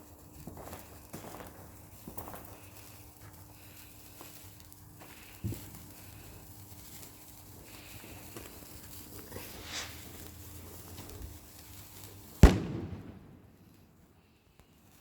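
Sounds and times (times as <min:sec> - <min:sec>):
faint background noise: 0:00.0 - 0:15.0
firework bang: 0:09.6 - 0:10.0, 0:12.4 - 0:13.8.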